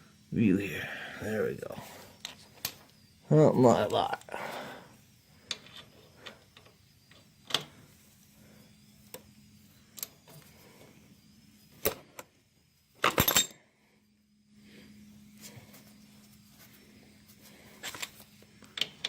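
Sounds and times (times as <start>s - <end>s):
metal tools clinking: 13.0s - 13.6s.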